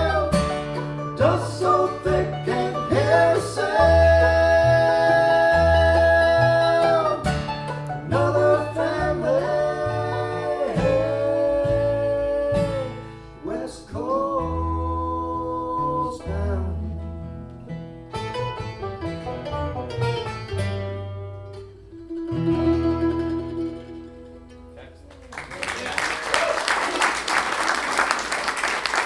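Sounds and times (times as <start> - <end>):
held bending melody notes: 0.0 - 13.3, 16.4 - 25.0
bass line: 0.0 - 24.8
strummed acoustic guitar: 0.0 - 25.0.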